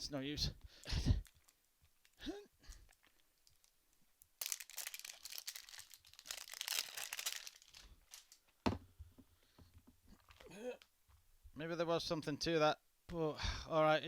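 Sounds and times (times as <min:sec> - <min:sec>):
packaging crinkling and tearing: 0:01.2 - 0:08.4.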